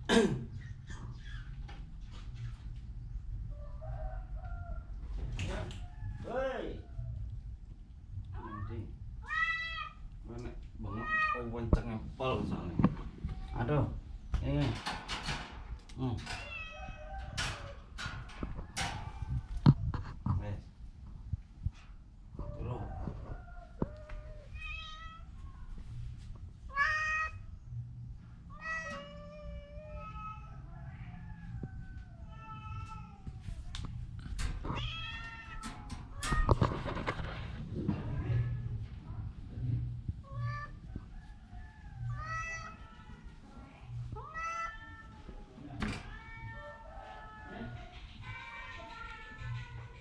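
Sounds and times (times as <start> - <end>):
cat meowing: 8.3 - 10.1, 10.8 - 11.6, 16.3 - 17.8, 23.8 - 25.8, 26.7 - 27.5, 28.5 - 34.0, 34.6 - 36.7, 40.2 - 41.1, 42.0 - 43.4, 44.1 - 50.0.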